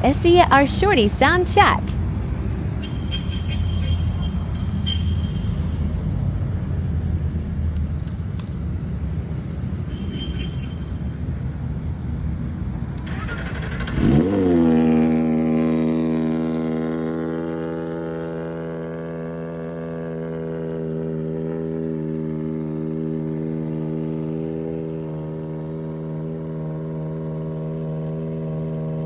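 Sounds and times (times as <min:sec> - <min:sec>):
motorcycle engine idling and revving: 0:00.0 - 0:29.0.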